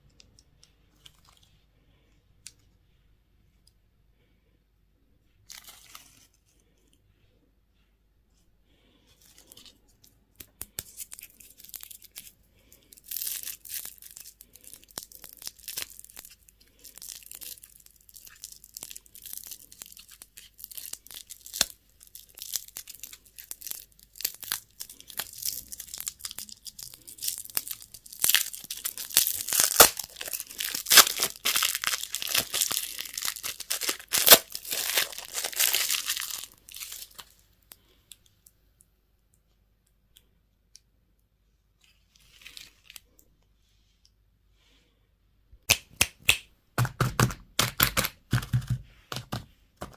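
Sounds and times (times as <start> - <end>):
candy wrapper crinkling: 5.5 - 6.5, 9.2 - 38.2, 46.8 - 49.9.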